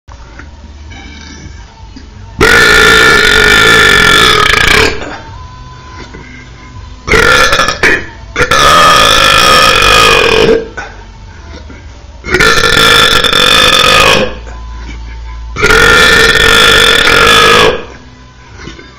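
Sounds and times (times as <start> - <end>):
loud drawn-out belches: 2.4 - 5.2, 7.1 - 10.7, 12.3 - 14.4, 15.6 - 17.9.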